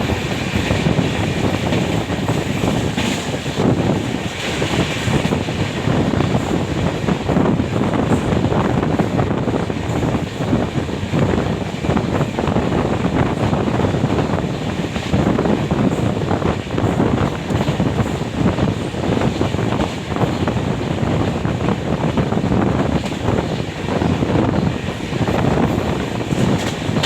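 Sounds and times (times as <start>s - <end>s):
train wheels rumbling on track: 0.0s - 27.0s
wind buffeting microphone: 0.0s - 27.0s.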